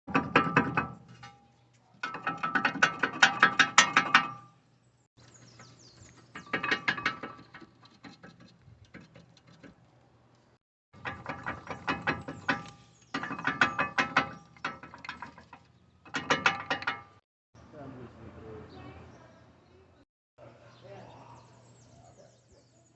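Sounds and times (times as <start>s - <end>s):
metallic clicking and rattling: 0.1s - 4.6s, 6.3s - 10.4s, 11.0s - 17.2s.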